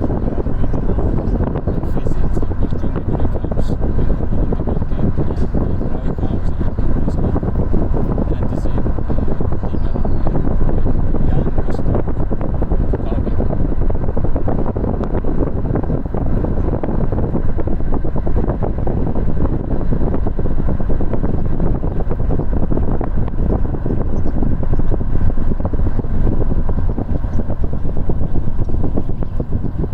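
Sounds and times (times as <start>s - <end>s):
wind buffeting microphone: 0.0s - 29.9s.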